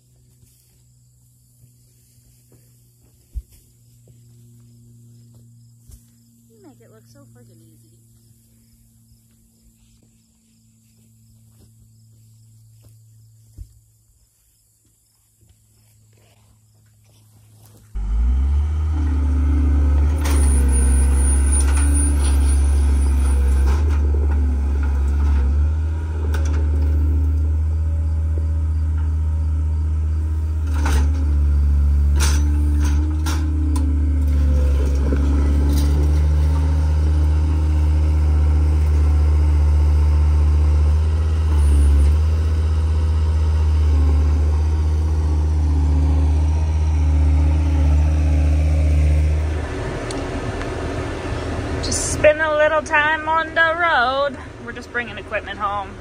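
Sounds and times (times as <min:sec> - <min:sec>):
vehicle engine droning: 0:00.0 - 0:14.1, 0:15.5 - 0:56.0
rattles and clicks: 0:32.1 - 0:36.7.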